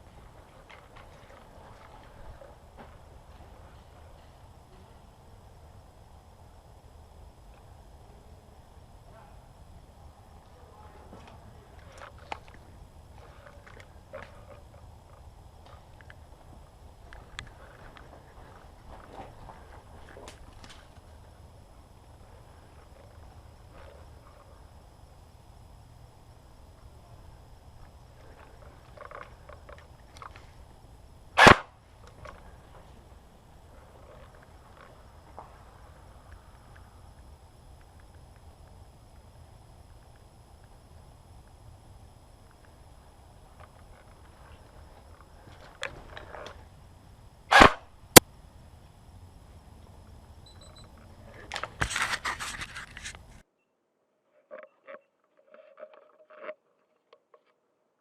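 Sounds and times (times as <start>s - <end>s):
airsoft gun shot: 31.4s - 31.8s, 47.5s - 47.9s.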